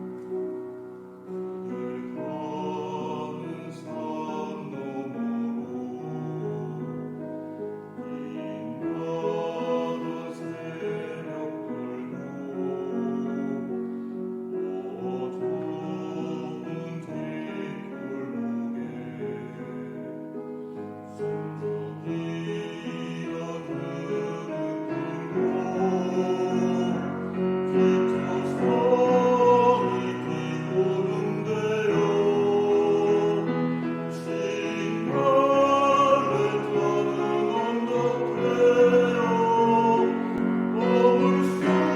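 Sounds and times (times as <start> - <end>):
choir singing: 0.0 - 41.9
piano accompaniment: 0.0 - 41.9.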